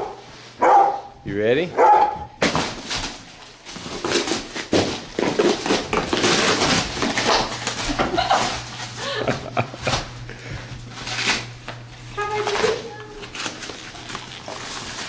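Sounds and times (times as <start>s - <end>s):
dog ripping cardboard box: 2.4s - 8.3s, 12.4s - 15.0s.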